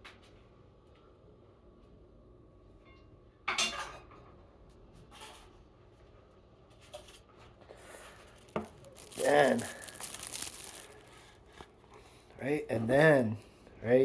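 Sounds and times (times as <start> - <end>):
rustle and clatter of containers: 6.7 - 12.2.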